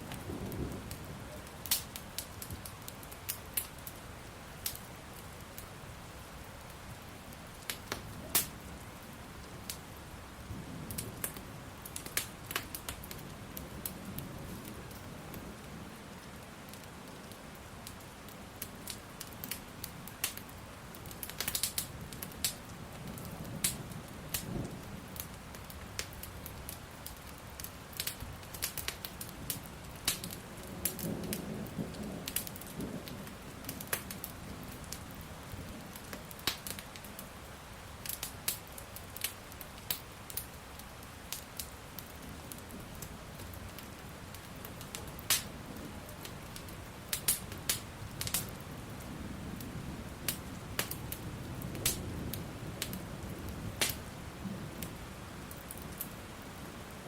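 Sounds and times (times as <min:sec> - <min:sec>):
low thunder rumbles: 0:00.0 - 0:01.6, 0:30.4 - 0:36.0
wood fire crackling and popping: 0:00.0 - 0:10.1, 0:10.9 - 0:57.0
falling rain hiss: 0:00.0 - 0:57.0.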